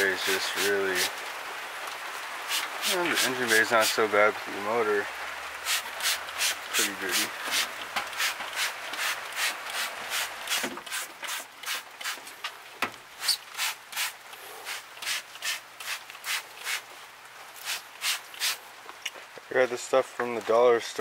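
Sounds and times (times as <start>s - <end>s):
scrub brush scrubbing: 2.5s - 4.0s.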